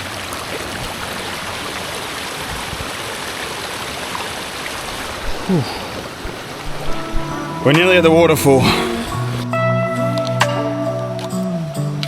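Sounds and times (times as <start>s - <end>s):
stream of running water: 0.0s - 9.4s.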